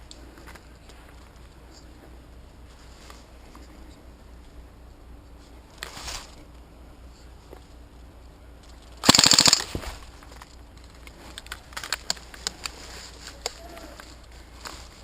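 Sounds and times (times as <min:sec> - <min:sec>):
airsoft gun full-auto burst: 0:09.0 - 0:09.8.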